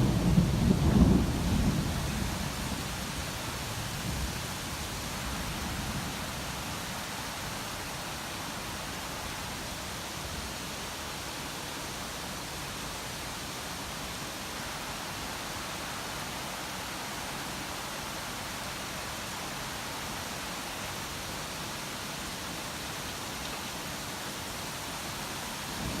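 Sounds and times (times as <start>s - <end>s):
heavy rain hissing: 0.0s - 26.0s.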